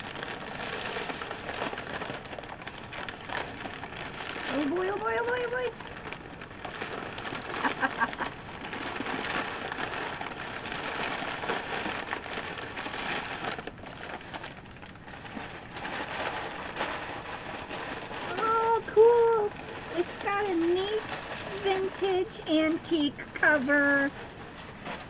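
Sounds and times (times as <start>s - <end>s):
packing material rustling: 0.0s - 25.0s.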